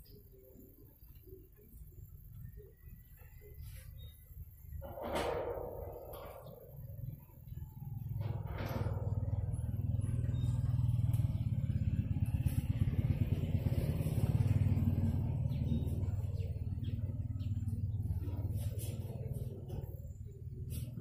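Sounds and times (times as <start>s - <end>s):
small engine pulsing: 8.2s - 20.3s.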